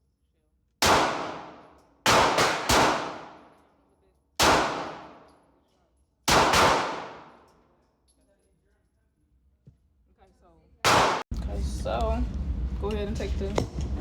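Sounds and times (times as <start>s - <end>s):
pistol gunshots echoing: 0.8s - 3.6s, 4.4s - 5.4s, 6.3s - 7.5s, 10.9s - 11.2s.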